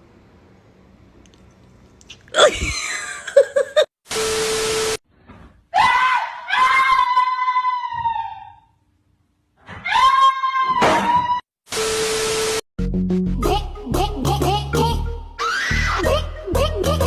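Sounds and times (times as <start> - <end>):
drawn-out screaming cries: 15.4 - 16.0.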